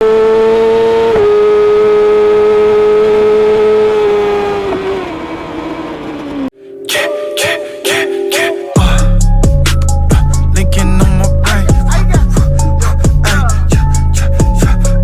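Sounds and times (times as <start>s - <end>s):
motorcycle engine screaming: 0.0s - 6.5s.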